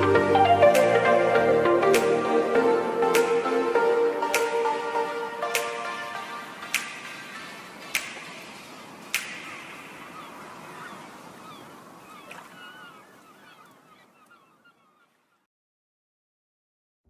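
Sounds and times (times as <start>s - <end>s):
background music: 0.0s - 11.2s
chirping glides: 4.6s - 15.5s.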